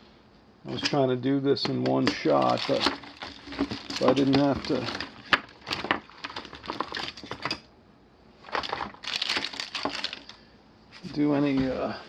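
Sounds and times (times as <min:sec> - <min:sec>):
small hard objects clicking and rattling: 0:02.0 - 0:07.7, 0:08.5 - 0:10.4.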